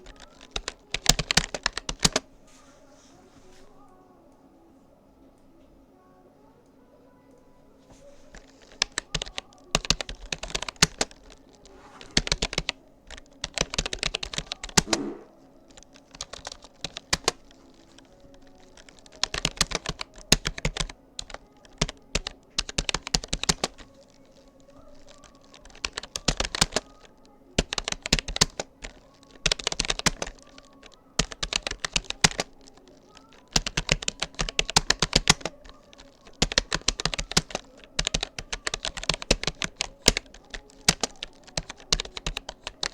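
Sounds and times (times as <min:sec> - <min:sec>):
computer keyboard typing: 0:00.0 - 0:02.3, 0:08.3 - 0:42.9.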